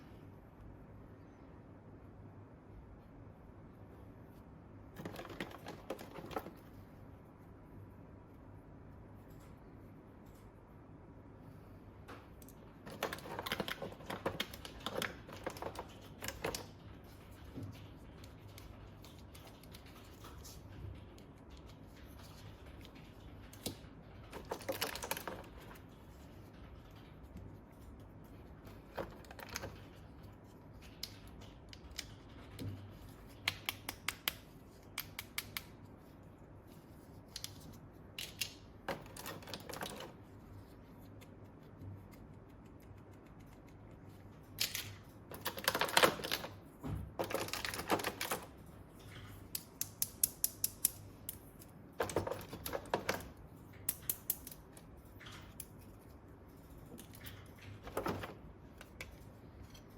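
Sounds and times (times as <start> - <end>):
plastic toy parts clicking: 30.8 - 35.7, 44.5 - 46.6, 47.2 - 48.6, 49.3 - 55.9.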